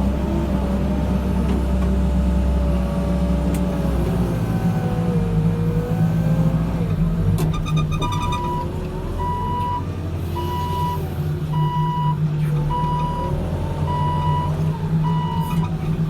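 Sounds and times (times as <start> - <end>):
diesel engine running under load: 0.0 - 16.0.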